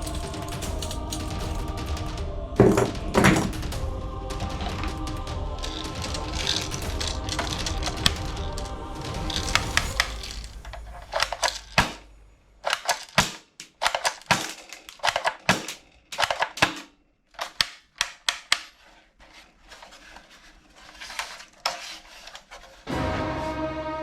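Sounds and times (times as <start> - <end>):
toy guns clicking and snapping: 0.0 - 1.4, 5.6 - 8.7, 9.3 - 12.0, 12.6 - 19.0.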